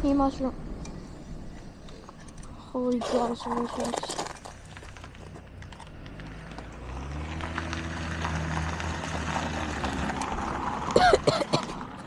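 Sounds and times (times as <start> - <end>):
road noise: 0.0 - 12.0
wind: 0.0 - 12.0
passing vehicle engine hum: 4.4 - 12.0.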